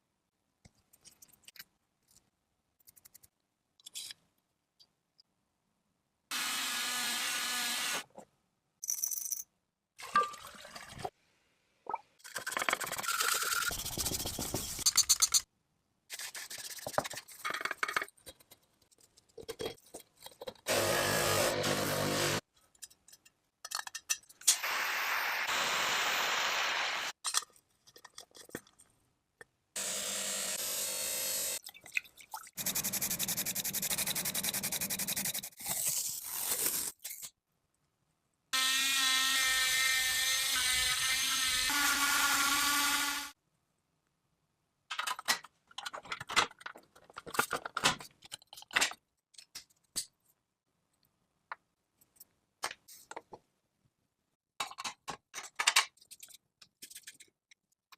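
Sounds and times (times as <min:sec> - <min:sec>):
small power tool whining: 0:29.8 - 0:31.6.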